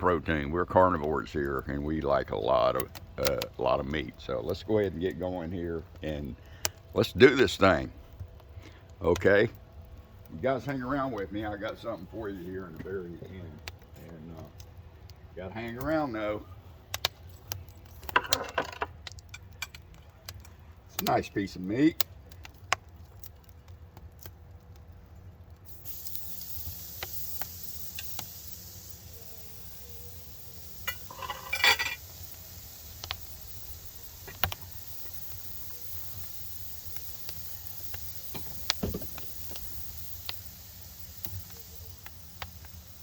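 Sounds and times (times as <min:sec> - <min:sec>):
fire crackling and clicking: 0:00.0 - 0:43.0
steak sizzling over fire: 0:00.0 - 0:43.0
noisy burst: 0:25.7 - 0:43.0.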